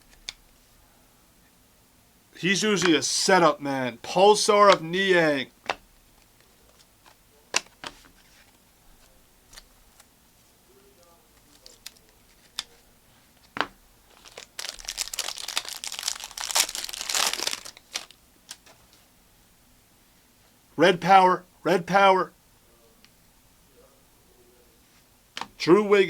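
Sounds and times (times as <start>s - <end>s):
cards clicking and tapping: 0.0s - 0.4s, 4.7s - 5.0s, 5.6s - 10.1s, 13.4s - 13.8s
foil wrappers crinkling and tearing: 11.4s - 12.8s, 14.1s - 18.7s.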